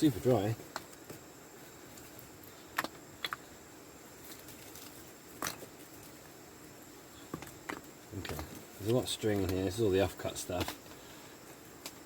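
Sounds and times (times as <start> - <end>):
faint steady hiss: 0.0 - 12.0
dry scraps clicking and crackling: 4.2 - 6.2, 7.3 - 12.0.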